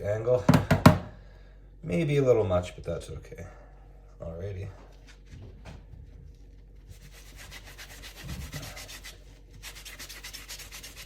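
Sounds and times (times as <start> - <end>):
sponge scrubbing knife blade: 7.0 - 11.0.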